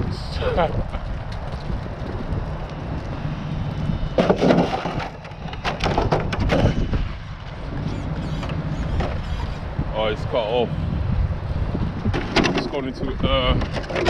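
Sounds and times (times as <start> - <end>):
wind rumble on microphone: 0.0 - 14.0.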